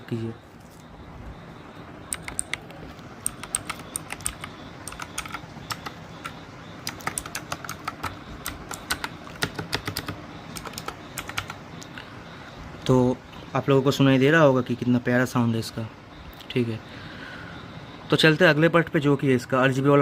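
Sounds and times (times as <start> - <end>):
mechanical keyboard typing: 2.1 - 11.6.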